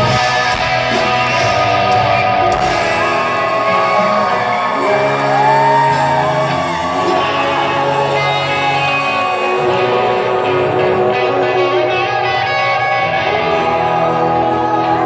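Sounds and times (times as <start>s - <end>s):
crowd shouts and whoops: 0.0s - 10.0s
electric guitar: 0.0s - 15.0s
live rock band playing: 0.0s - 15.0s
sustained bass notes: 0.0s - 15.0s.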